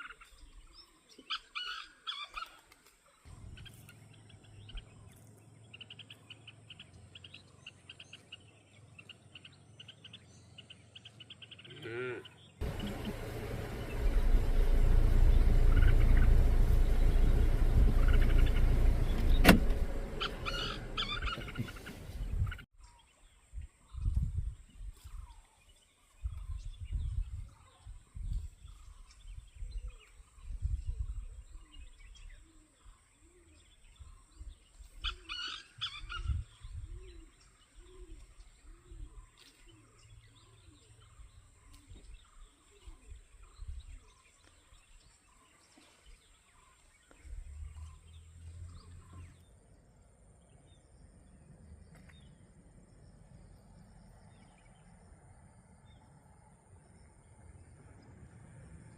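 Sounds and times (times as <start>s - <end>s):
birds chirping: 0.0s - 58.1s
low rising-and-falling bird notes: 12.6s - 22.6s
wind buffeting microphone: 12.6s - 22.7s, 23.6s - 25.4s, 26.2s - 32.4s.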